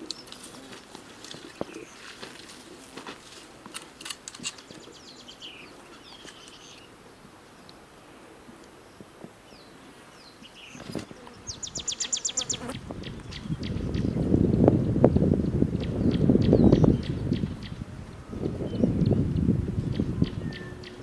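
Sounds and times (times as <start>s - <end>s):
birds chirping and trilling: 4.5s - 6.9s, 8.9s - 14.2s, 15.8s - 17.8s, 18.4s - 21.0s.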